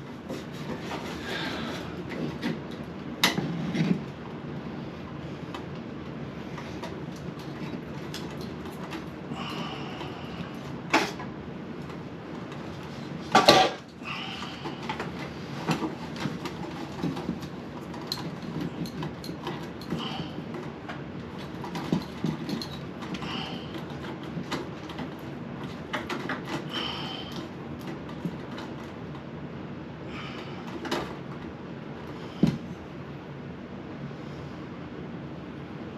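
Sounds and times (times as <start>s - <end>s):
knocks and clatter of handling: 0.0s - 4.3s, 6.5s - 29.3s, 30.3s - 31.5s.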